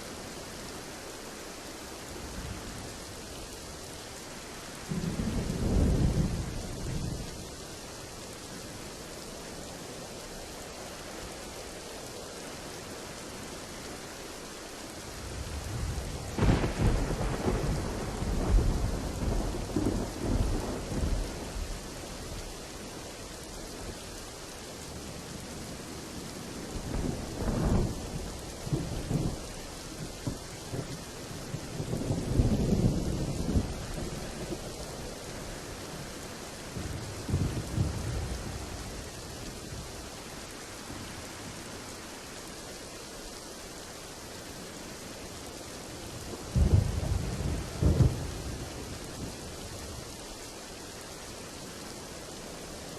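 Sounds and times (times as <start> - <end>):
steady rain: 0.0 - 52.9
thunder rumbling: 4.8 - 7.4, 15.2 - 22.5, 25.0 - 40.0, 46.3 - 50.1.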